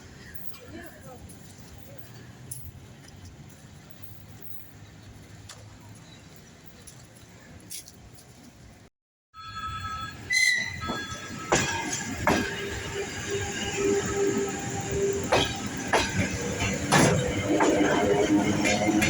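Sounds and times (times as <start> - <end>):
train wheels knocking over joints: 10.4 - 19.0.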